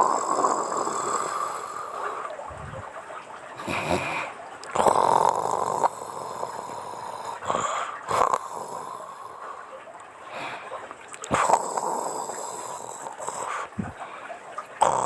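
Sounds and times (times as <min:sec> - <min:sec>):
woman snoring: 0:00.0 - 0:01.6, 0:04.8 - 0:09.1.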